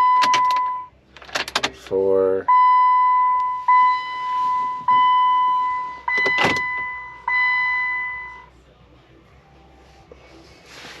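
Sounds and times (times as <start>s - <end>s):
dashboard chime dinging: 2.5s - 8.5s
door lock clunk: 6.1s - 6.8s.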